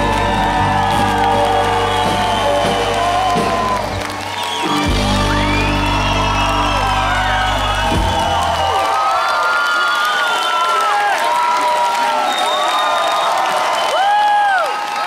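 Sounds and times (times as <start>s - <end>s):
live band music: 0.0s - 8.7s
bass line: 0.0s - 8.8s
crowd whooping and cheering: 0.0s - 15.0s.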